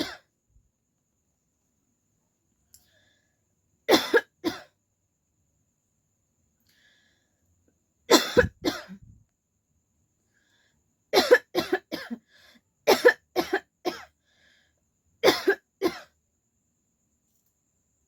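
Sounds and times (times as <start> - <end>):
woman coughing: 0.0 - 0.3, 3.9 - 4.7, 8.1 - 9.1, 11.2 - 12.2, 12.9 - 14.1, 15.2 - 16.1.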